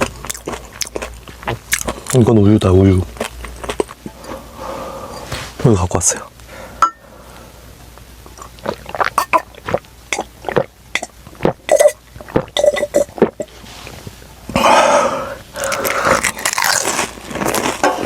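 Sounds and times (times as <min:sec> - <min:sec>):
gulping milk: 0:08.3 - 0:13.5, 0:15.6 - 0:16.8.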